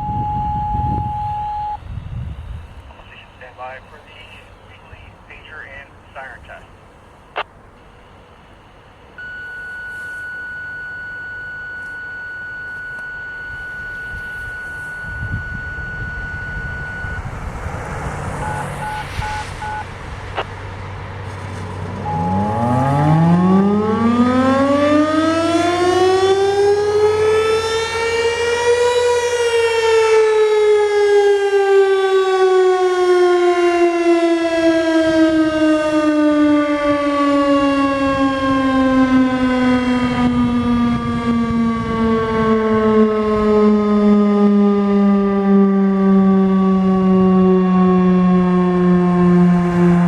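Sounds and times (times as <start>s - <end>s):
electronic activation tones: 0.0s - 1.8s, 9.2s - 17.5s, 18.4s - 19.8s, 22.0s - 23.4s.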